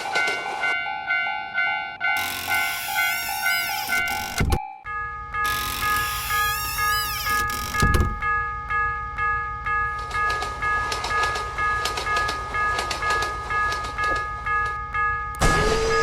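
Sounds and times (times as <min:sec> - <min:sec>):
train rumble and wheel clatter: 0:00.0 - 0:04.0, 0:09.5 - 0:16.0
railway crossing bell ringing: 0:00.0 - 0:16.0.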